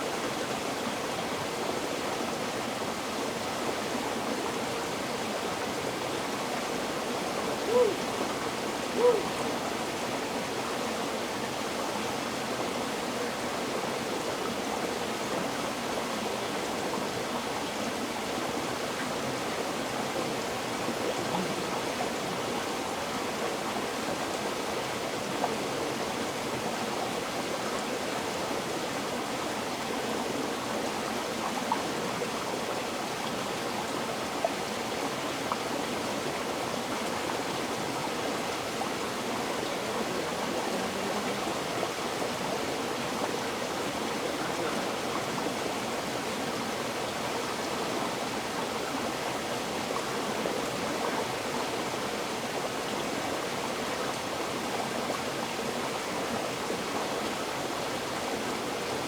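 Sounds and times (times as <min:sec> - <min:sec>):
river water rushing: 0:00.0 - 0:59.0.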